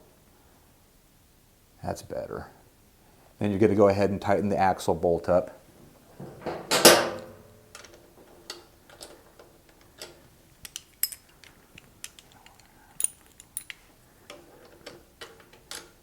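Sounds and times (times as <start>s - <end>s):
wrench clicking on bolt: 10.6s - 13.8s.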